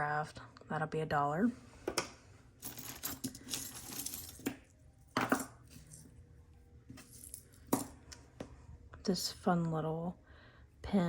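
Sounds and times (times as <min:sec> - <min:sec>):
jewelry clinking and rattling: 0:02.5 - 0:08.2.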